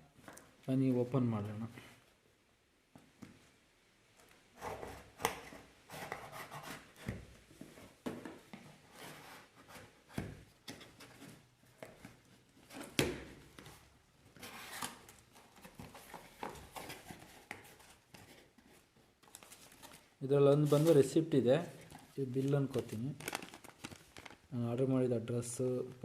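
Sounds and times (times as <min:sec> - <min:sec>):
packaging scraping and rustling: 0:21.8 - 0:24.5.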